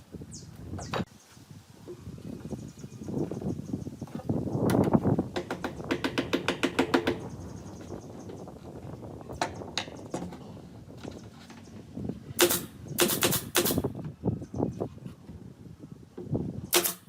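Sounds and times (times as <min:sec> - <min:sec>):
hand tool clicking on wood: 0:16.7 - 0:17.0.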